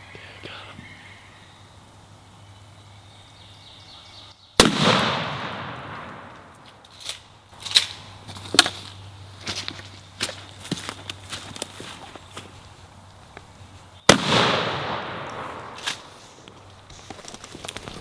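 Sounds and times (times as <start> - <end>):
shotgun blast echoing: 4.6 - 6.6, 14.1 - 16.1
sharp snaps and cracks: 4.6 - 9.0, 14.1 - 18.0.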